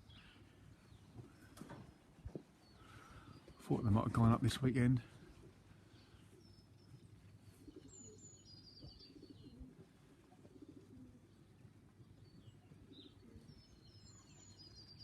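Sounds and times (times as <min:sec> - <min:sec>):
pigeons cooing: 0:05.0 - 0:14.4.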